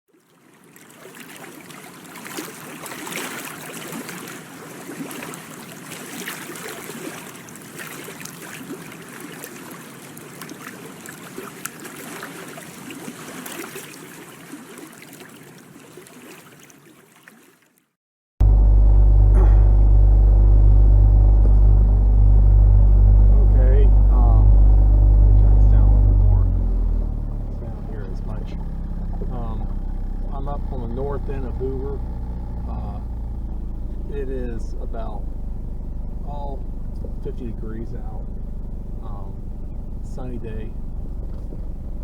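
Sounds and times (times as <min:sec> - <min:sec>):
small splashes: 0:00.1 - 0:17.9
water lapping and trickling: 0:00.1 - 0:18.0, 0:25.7 - 0:42.0.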